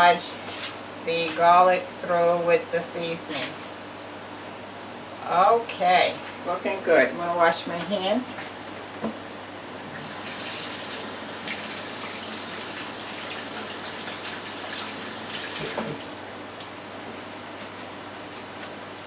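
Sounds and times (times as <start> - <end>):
faucet water running: 9.9 - 16.1.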